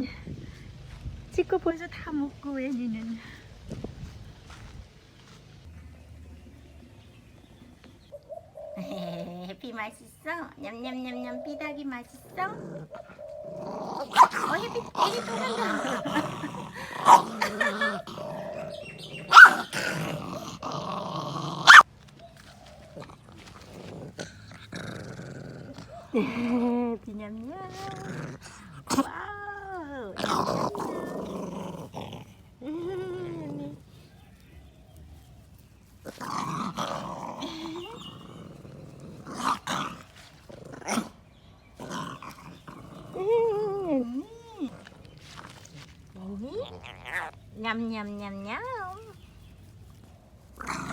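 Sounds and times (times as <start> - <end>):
dog growling: 8.6 - 9.6, 12.1 - 21.9, 22.8 - 34.0, 36.0 - 45.9, 46.6 - 47.4, 50.6 - 50.9.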